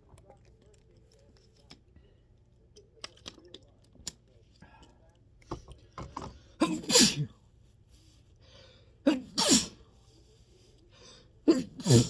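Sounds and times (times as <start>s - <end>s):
person sneezing: 6.6s - 7.3s, 9.1s - 9.8s, 11.5s - 12.0s.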